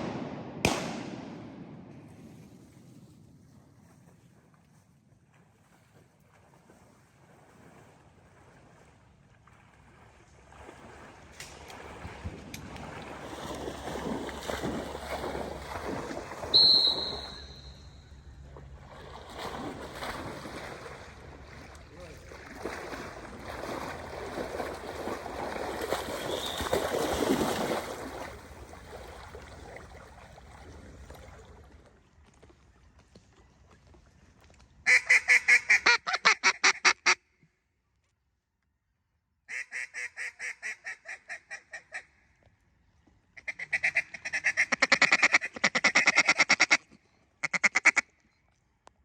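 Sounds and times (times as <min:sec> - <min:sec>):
brief high whistle: 0:16.5 - 0:18.0, 0:26.2 - 0:26.8
duck call quacks: 0:34.9 - 0:37.2, 0:39.5 - 0:42.1, 0:43.4 - 0:48.1.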